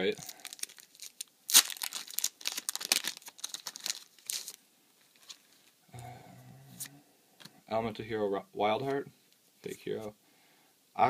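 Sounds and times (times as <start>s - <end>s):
foil wrapper tearing and crinkling: 0.1s - 4.6s.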